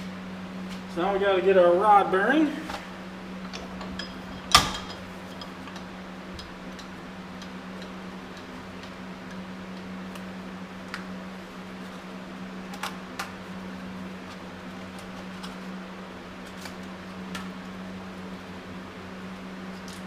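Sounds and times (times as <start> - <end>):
shop fan humming: 0.0 - 20.0
engine parts clicking and tapping: 2.7 - 11.1.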